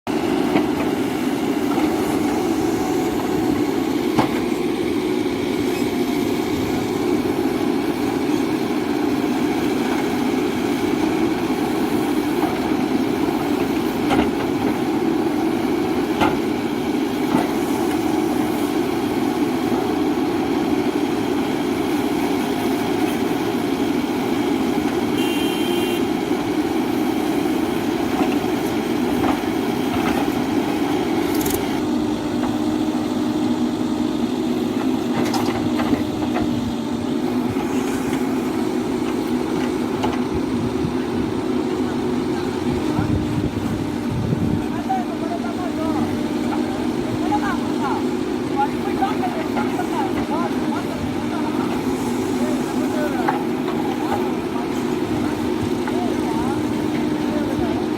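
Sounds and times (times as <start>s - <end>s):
diesel engine running: 0.1s - 57.9s
brief high tone: 25.2s - 26.1s.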